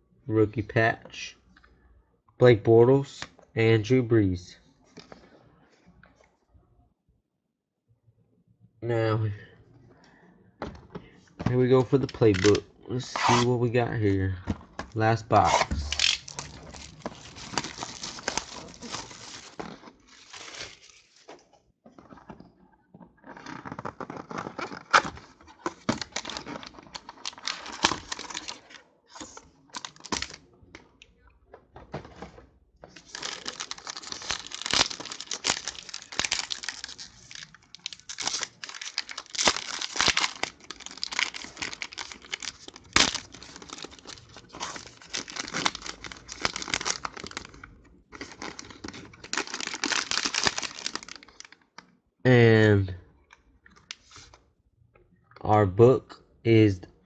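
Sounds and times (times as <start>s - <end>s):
plastic wrapping tearing: 15.4s - 21.3s, 23.4s - 30.4s, 33.0s - 51.6s
plastic crinkling: 15.4s - 21.4s, 23.2s - 30.5s, 32.9s - 51.7s.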